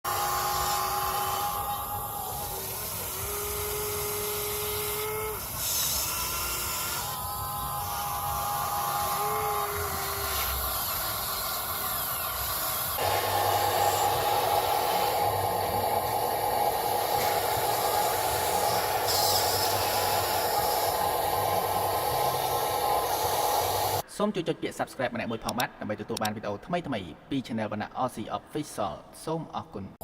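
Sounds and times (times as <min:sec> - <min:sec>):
electric motor whine: 0:00.1 - 0:24.0.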